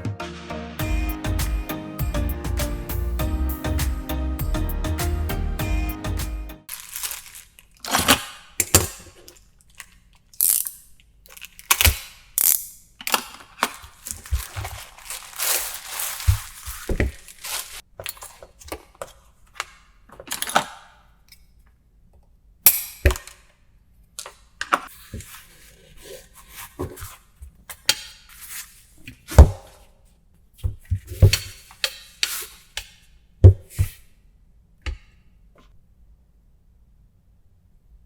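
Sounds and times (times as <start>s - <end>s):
loud sharp strikes: 0.0s - 6.6s.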